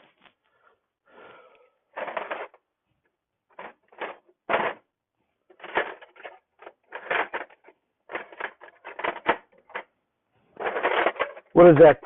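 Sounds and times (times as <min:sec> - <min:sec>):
metal wrenches clinking: 0:10.6 - 0:12.0.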